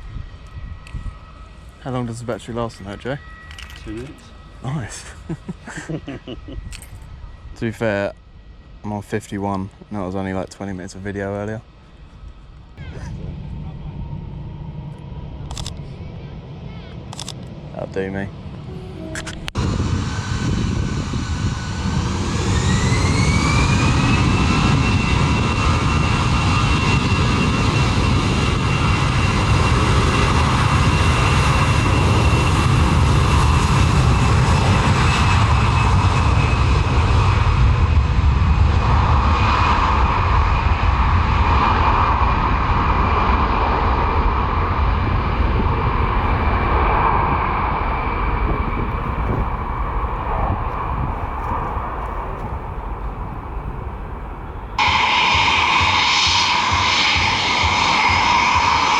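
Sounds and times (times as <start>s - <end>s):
jet turbine whine: 0.0s - 58.9s
deep engine rumble: 12.6s - 17.7s, 18.3s - 58.9s.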